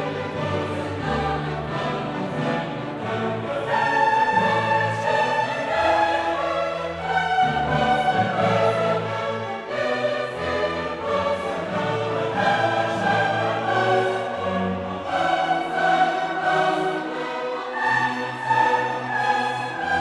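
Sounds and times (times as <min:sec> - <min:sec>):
choir singing with orchestra: 0:00.0 - 0:20.0.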